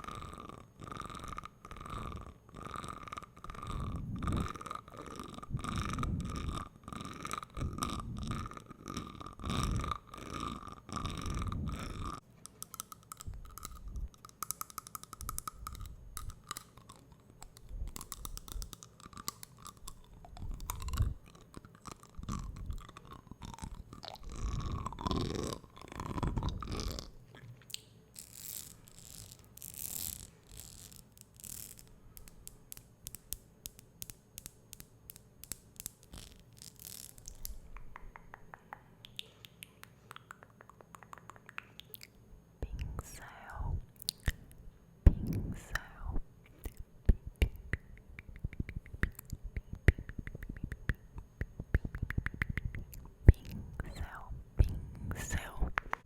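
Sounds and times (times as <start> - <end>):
wet mouth clicks and smacks: 12.4 - 27.9, 37.2 - 56.0.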